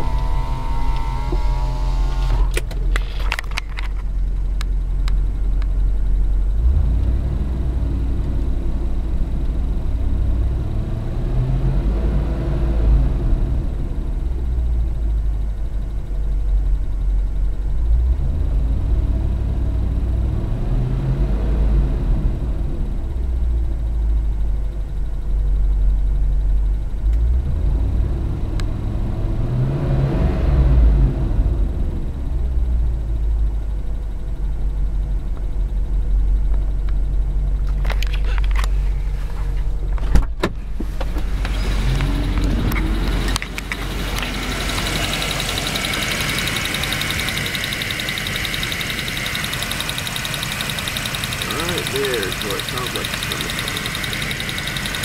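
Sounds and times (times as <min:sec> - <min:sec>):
car engine revving: 0:00.0 - 0:03.2, 0:41.1 - 0:55.0
fast engine ticking: 0:41.3 - 0:55.0.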